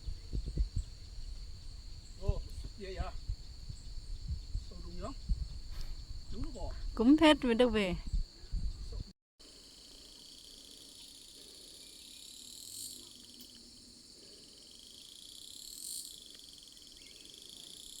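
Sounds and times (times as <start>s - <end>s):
insects trilling: 0.0s - 18.0s
louder insect call: 0.0s - 18.0s.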